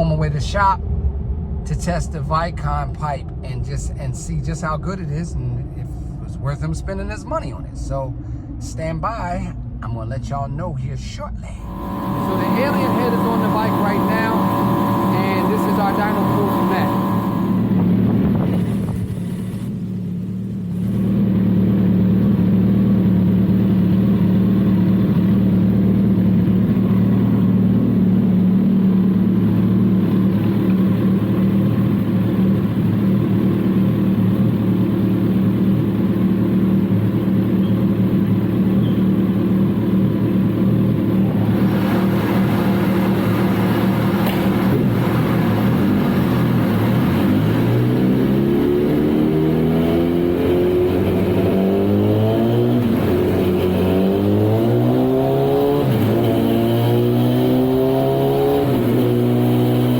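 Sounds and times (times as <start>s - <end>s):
motorcycle engine revving high: 11.6s - 19.2s, 20.9s - 59.9s.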